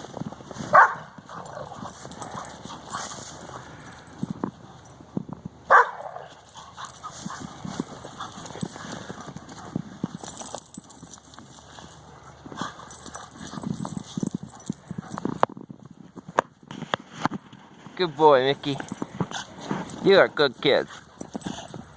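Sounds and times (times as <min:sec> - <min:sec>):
dog barking: 0:00.7 - 0:01.6, 0:05.7 - 0:06.3.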